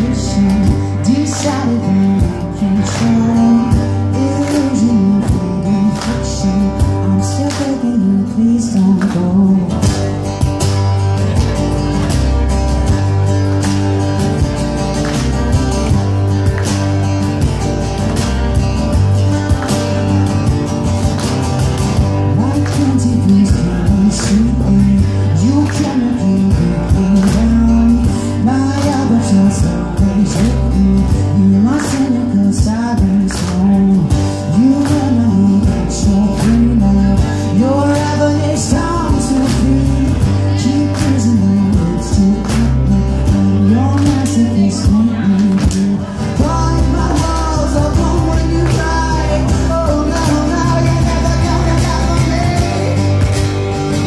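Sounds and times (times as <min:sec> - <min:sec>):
man singing: 0:00.0 - 0:12.4, 0:22.0 - 0:54.0
live rock band playing: 0:00.0 - 0:54.0.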